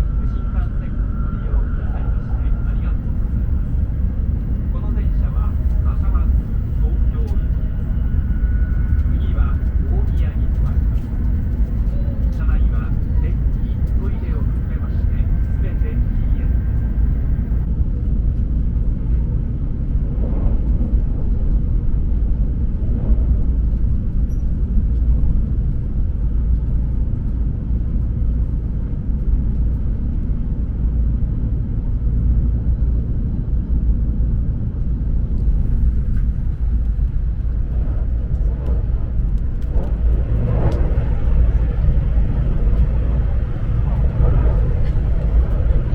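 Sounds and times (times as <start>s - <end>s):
train rumble inside passenger car: 0.0s - 45.9s.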